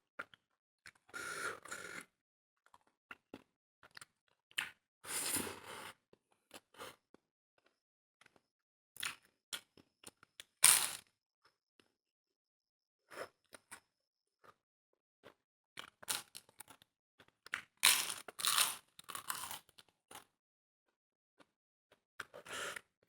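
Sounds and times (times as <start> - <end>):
crunchy chewing: 17.8 - 19.7.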